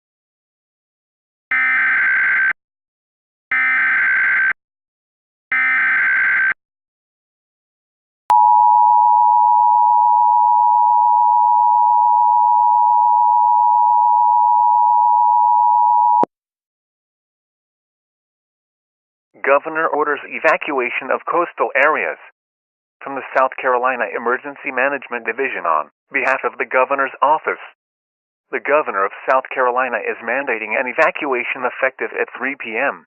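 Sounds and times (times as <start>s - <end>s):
two-tone alarm: 1.5s - 2.6s, 3.5s - 4.6s, 5.5s - 6.6s, 8.3s - 16.3s.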